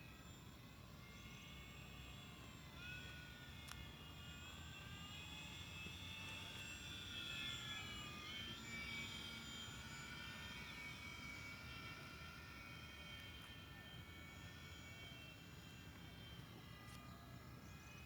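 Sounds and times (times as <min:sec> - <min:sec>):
model plane motor whine: 0:00.0 - 0:18.0.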